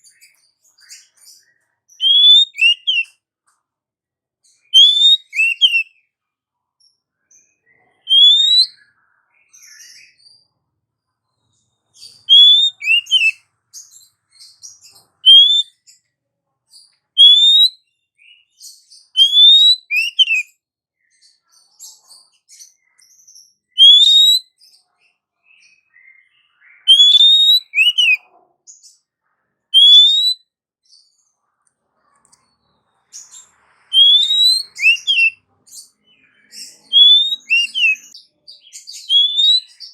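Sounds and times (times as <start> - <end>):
bird whistled calls: 2.0 - 3.1, 4.6 - 5.9, 8.1 - 8.9, 12.1 - 13.4, 15.2 - 15.8, 17.2 - 17.8, 19.2 - 20.5, 23.8 - 24.4, 26.0 - 28.2, 29.8 - 30.4, 33.9 - 35.4, 36.3 - 38.2, 38.8 - 39.9.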